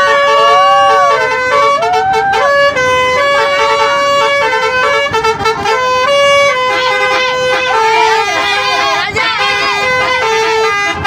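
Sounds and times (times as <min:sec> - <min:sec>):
musical bus horn tune: 0:00.0 - 0:11.0.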